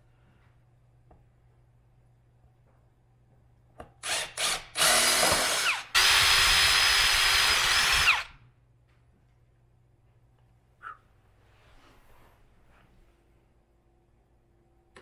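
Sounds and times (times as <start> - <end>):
power drill whining: 4.0 - 8.3.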